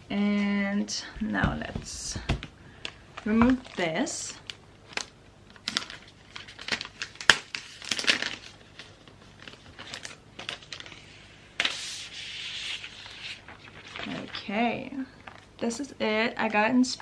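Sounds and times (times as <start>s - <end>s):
plastic wrapping crinkling: 2.8s - 11.9s, 12.7s - 15.7s.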